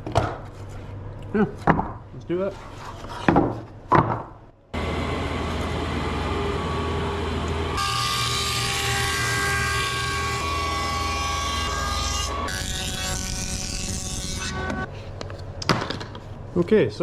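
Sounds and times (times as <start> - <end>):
woodworking machine droning: 4.8 - 14.9.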